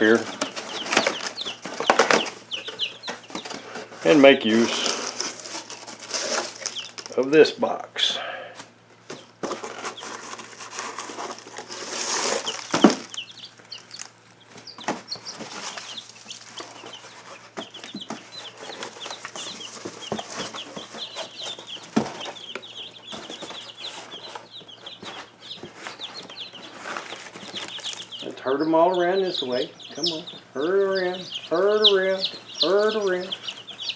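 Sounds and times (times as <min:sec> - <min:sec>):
rustling: 0:00.0 - 0:07.2, 0:09.0 - 0:28.4
chicks peeping: 0:00.0 - 0:33.9.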